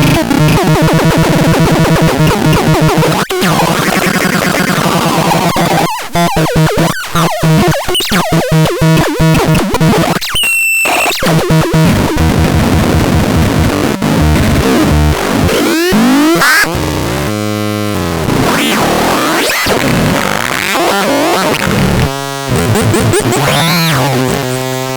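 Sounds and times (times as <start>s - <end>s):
synthesizer electronic sound: 14.6s - 16.7s, 22.5s - 24.4s.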